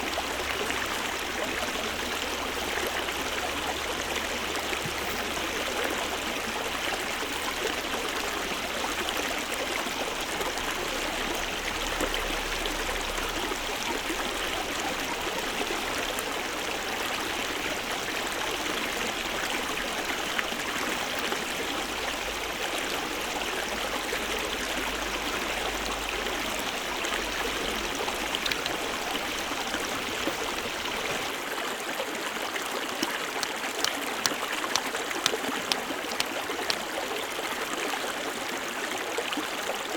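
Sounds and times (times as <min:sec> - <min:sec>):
stream running: 0:00.0 - 0:39.9
sharp clicks: 0:28.4 - 0:28.9.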